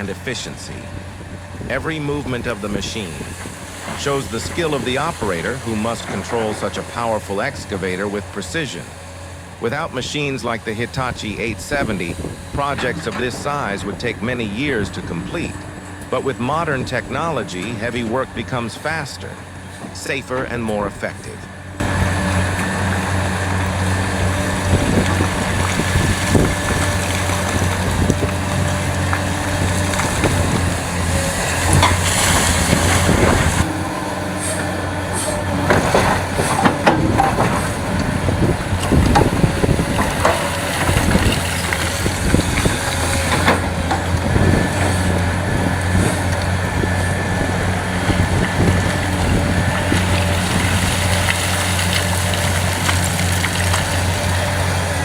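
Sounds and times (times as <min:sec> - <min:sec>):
heavy diesel machinery hum: 0:00.0 - 0:55.0.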